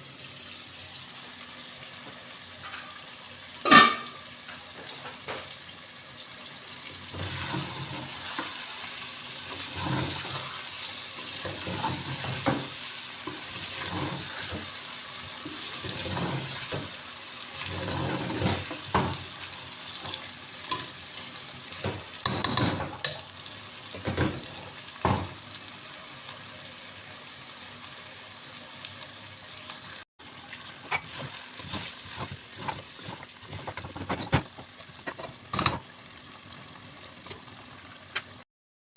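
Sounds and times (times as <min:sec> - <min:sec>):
food sizzling in a pot: 0:00.0 - 0:38.4
spoon knocking against pot: 0:22.2 - 0:23.2.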